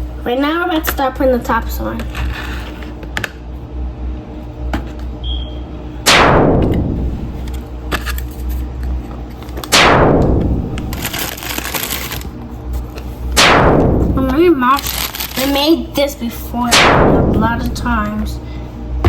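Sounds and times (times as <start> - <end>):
steady low hum: 0.0 - 19.0
hit with falling sweep effect: 6.0 - 7.4, 9.7 - 11.4, 13.4 - 14.4, 16.7 - 18.0.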